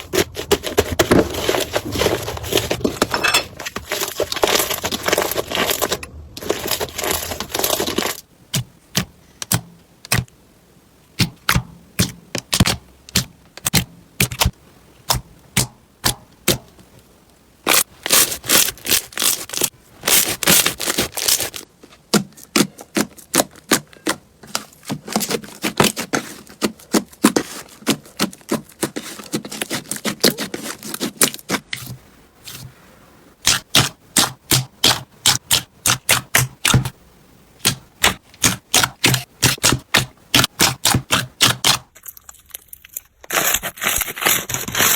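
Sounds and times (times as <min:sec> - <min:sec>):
slime popping and crackling: 0:17.7 - 0:31.9.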